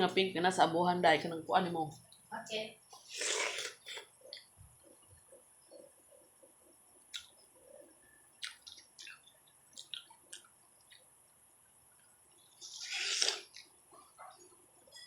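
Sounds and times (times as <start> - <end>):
wet eating clicks and smacks: 7.1 - 7.5, 8.4 - 11.1.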